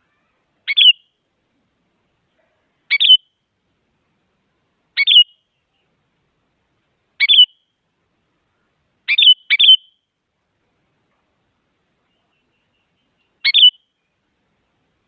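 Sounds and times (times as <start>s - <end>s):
bird giving short sharp calls: 2.9s - 3.3s, 7.2s - 7.6s, 9.1s - 10.0s, 13.2s - 13.9s.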